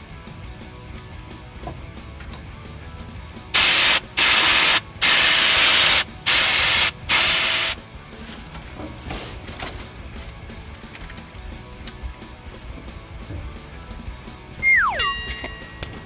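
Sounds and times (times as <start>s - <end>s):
pressurised spray hissing: 3.6s - 7.8s.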